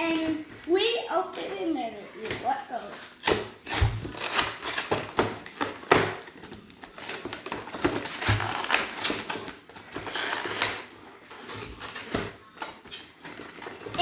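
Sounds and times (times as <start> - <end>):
packaging torn open by hand: 8.0 - 9.5.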